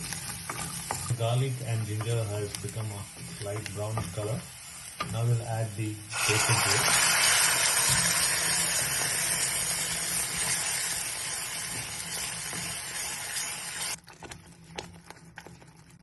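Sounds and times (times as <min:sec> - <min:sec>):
paste sizzling in hot oil: 0:00.0 - 0:14.0.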